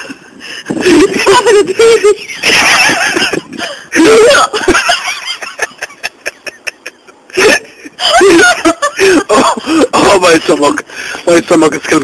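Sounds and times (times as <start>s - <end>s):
person laughing breathlessly: 0.0s - 4.8s, 5.4s - 10.0s.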